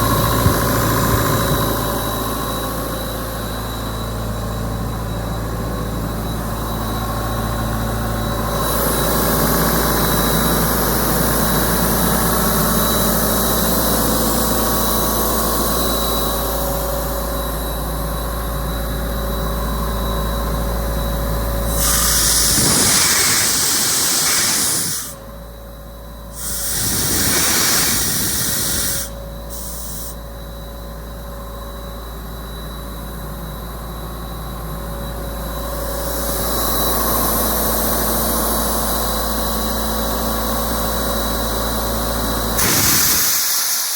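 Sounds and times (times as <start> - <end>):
air compressor engine humming: 0.0 - 30.5, 41.0 - 43.9
air hissing: 21.7 - 25.3, 26.3 - 30.2, 42.6 - 43.9
compressed air blowing off: 21.7 - 25.3, 26.3 - 30.2, 42.6 - 43.9.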